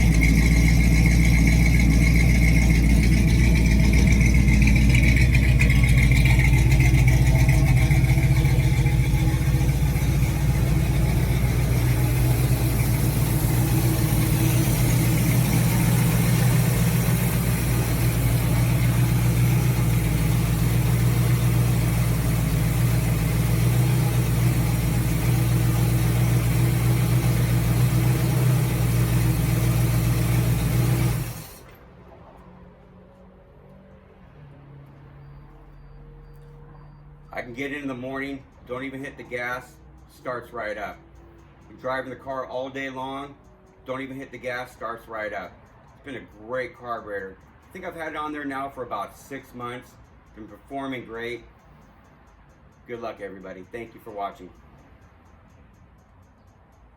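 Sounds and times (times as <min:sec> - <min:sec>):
car engine idling: 0:00.0 - 0:31.7.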